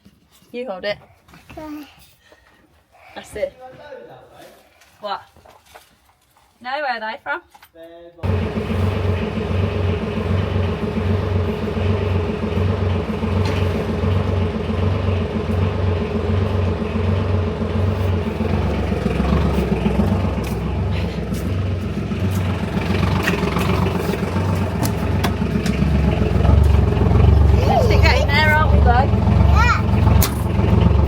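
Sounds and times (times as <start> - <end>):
vehicle engine throbbing: 8.2 - 31.0.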